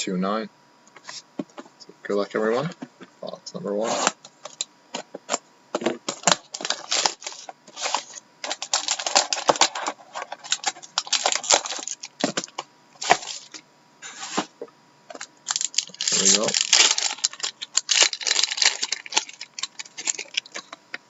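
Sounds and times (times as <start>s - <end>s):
plastic wrap and cardboard crackling: 6.1s - 13.6s, 15.2s - 20.8s
quick clicks and rustles: 15.2s - 20.8s.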